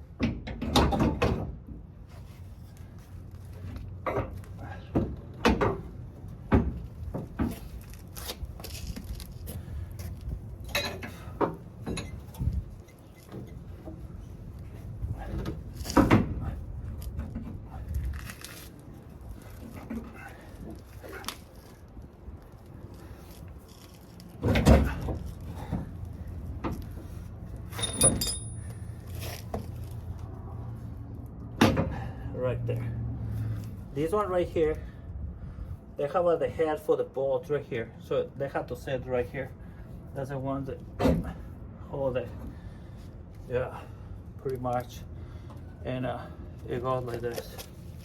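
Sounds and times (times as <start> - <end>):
metal parts knocking and clunking: 27.7 - 28.8
metallic ring: 27.7 - 29.0.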